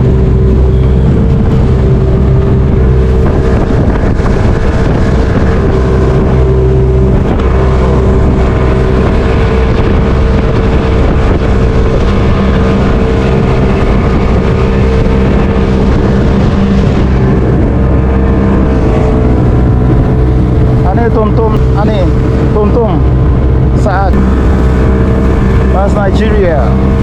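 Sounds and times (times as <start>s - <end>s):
motorboat engine drone: 0.0s - 27.0s.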